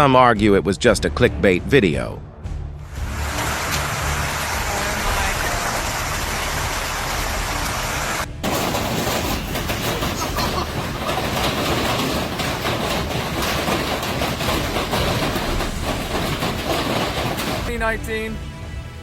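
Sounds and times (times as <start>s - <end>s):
hail pelting down: 3.0s - 18.0s.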